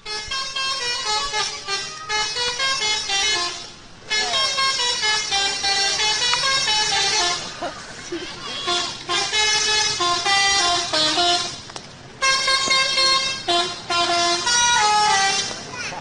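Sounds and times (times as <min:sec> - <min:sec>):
musical horn tune: 0:00.0 - 0:15.7.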